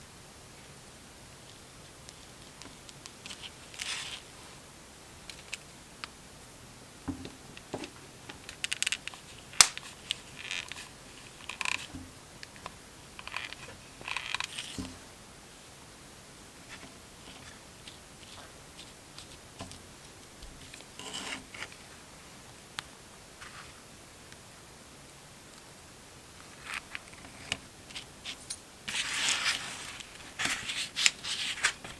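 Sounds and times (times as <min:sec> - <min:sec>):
paper rustling and scraping: 0:03.2 - 0:04.3, 0:26.6 - 0:31.9.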